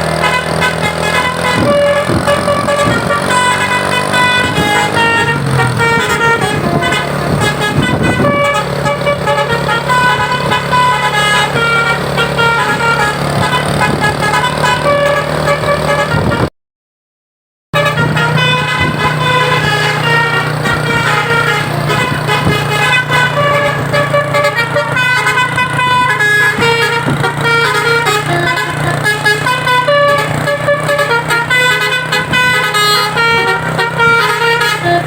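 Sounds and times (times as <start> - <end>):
bus engine running: 0.0 - 16.5, 17.8 - 35.0
multi-tone bus horn tune: 0.0 - 16.5, 17.7 - 35.0.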